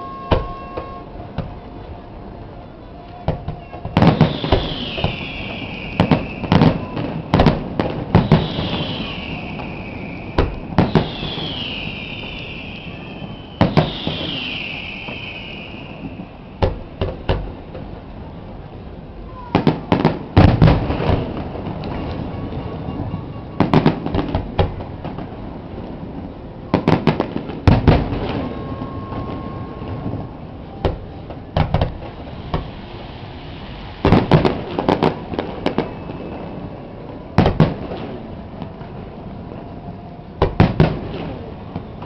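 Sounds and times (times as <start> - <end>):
fireworks booming: 0.0 - 42.0
fireworks crackling: 0.0 - 42.0.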